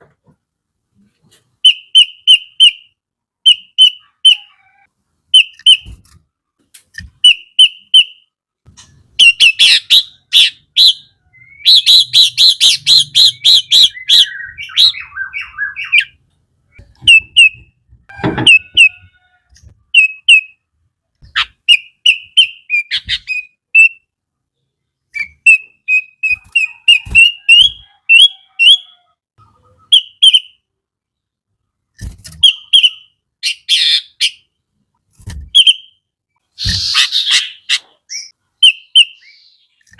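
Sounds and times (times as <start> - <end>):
bulbul singing: 9.2 - 19.1, 36.6 - 39.8.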